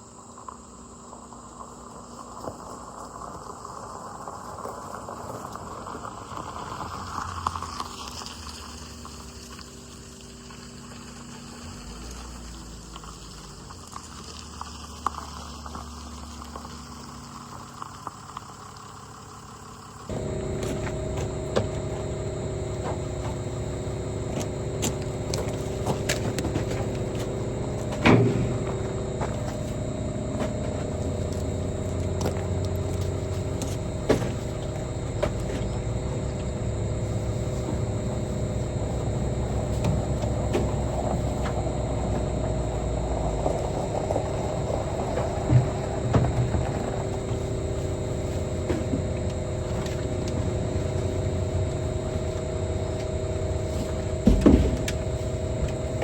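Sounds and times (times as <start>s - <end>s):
vehicle engine rumbling: 1.4s - 56.0s.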